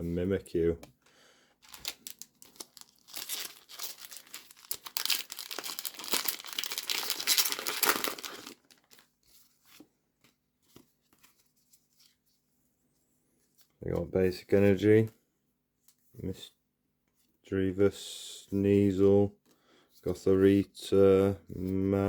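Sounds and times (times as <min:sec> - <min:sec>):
foil wrapper tearing and crinkling: 0:01.6 - 0:09.1.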